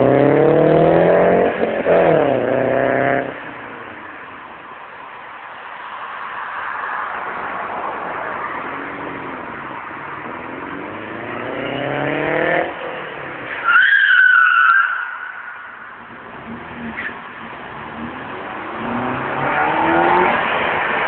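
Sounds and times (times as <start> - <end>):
car engine accelerating: 0.0 - 3.8, 16.0 - 21.0.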